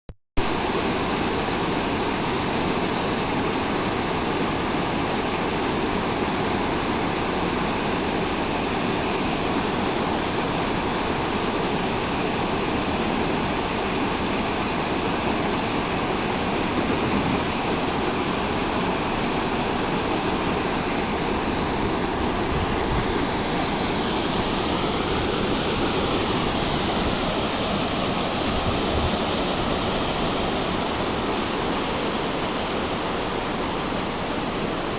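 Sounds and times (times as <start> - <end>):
waterfall rushing and splashing: 0.4 - 34.9.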